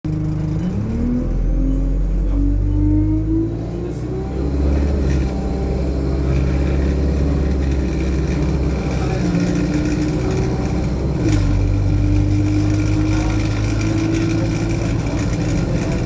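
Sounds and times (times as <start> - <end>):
bus drivetrain whine: 0.1 - 16.0
bus engine rumble: 0.1 - 16.0.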